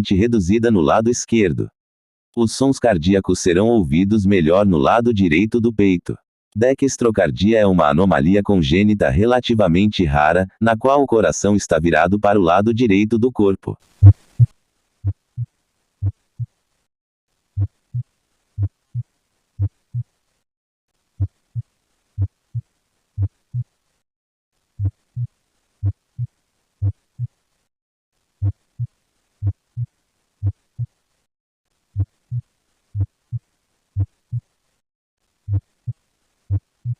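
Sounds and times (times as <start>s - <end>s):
heartbeat thumps: 14.0s - 16.5s, 22.2s - 23.7s, 24.8s - 27.3s, 28.4s - 30.9s, 32.0s - 32.4s, 34.0s - 34.4s, 35.5s - 36.9s.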